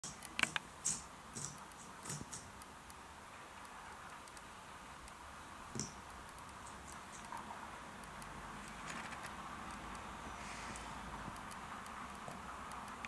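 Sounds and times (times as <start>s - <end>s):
fidget spinner clicks and taps: 0.0s - 2.7s
faint steady hiss: 0.0s - 13.0s.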